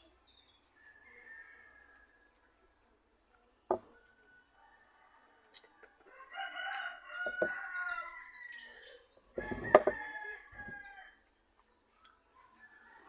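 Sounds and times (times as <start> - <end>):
rooster crowing: 0.8 - 2.3, 4.2 - 11.3, 12.4 - 13.0.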